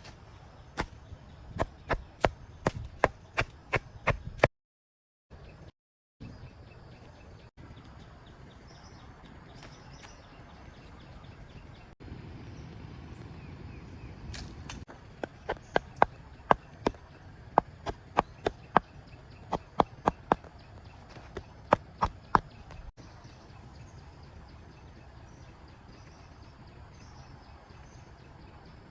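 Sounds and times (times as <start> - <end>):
low outdoor background: 0.0 - 4.5, 5.3 - 28.9.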